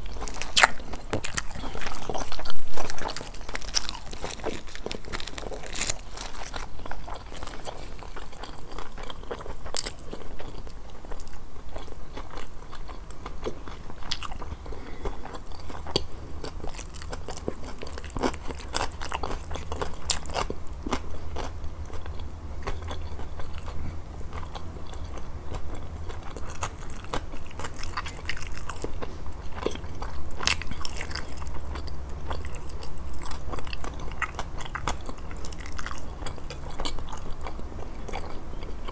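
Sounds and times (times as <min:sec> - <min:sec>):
crunchy bites and chewing: 0:00.0 - 0:38.9
steady low hum: 0:00.0 - 0:38.9.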